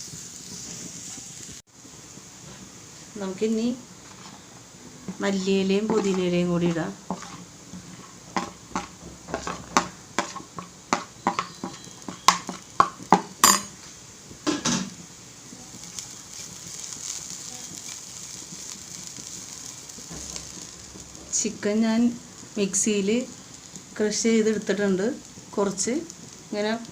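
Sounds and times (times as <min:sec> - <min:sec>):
food sizzling in a pan: 0:00.0 - 0:26.9
spoon scraping a frying pan: 0:04.0 - 0:13.9.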